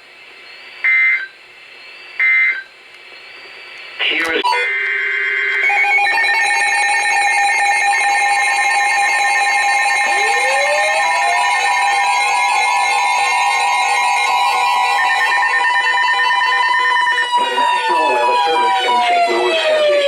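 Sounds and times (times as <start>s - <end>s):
two-tone alarm: 4.2s - 20.0s
tone sweeping upward: 9.8s - 20.0s.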